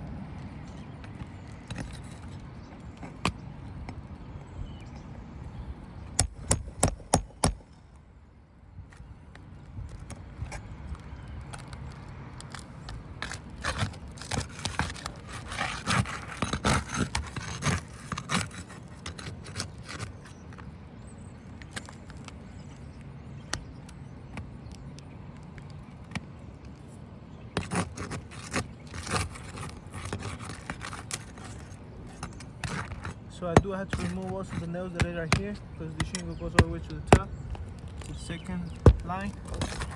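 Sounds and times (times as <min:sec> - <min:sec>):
metal tool scraping roof shingles: 0:13.2 - 0:20.4, 0:27.6 - 0:39.9.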